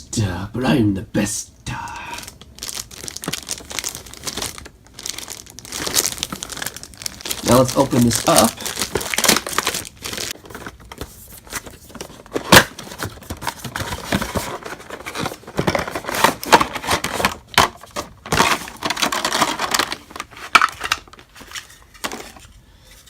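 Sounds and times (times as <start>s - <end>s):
packaging rustling and tearing: 2.0s - 22.6s.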